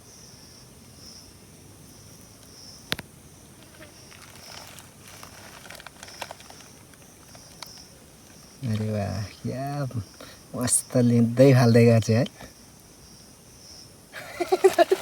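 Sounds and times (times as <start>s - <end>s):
insect chirping: 0.0s - 15.0s
small clicks and rustles: 2.4s - 9.0s, 14.4s - 15.0s.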